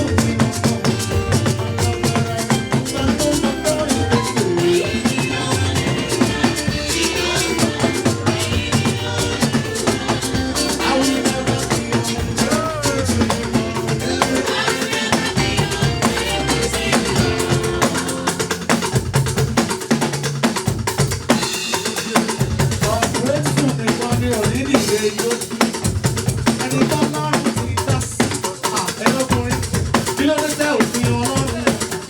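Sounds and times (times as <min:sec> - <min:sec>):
sustained bass notes: 0:00.0 - 0:19.5
drum kit steady beat: 0:00.0 - 0:32.0
church choir singing a hymn: 0:01.0 - 0:19.1.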